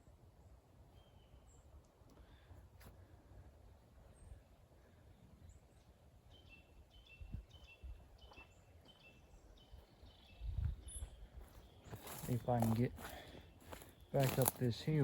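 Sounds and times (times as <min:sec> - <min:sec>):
wind on microphone: 0:10.4 - 0:11.2.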